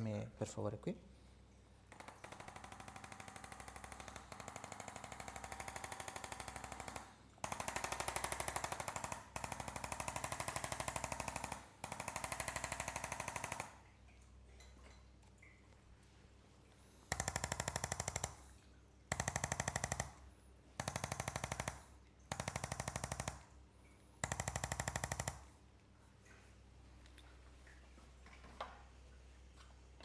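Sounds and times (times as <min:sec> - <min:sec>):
electric massage device pulsing: 0:17.1 - 0:18.5, 0:24.3 - 0:25.4.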